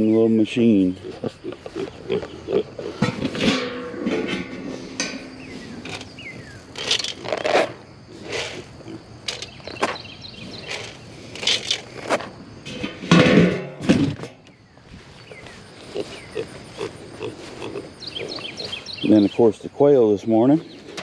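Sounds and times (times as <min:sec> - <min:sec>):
young pig grunting: 0:00.7 - 0:03.6, 0:15.8 - 0:19.0.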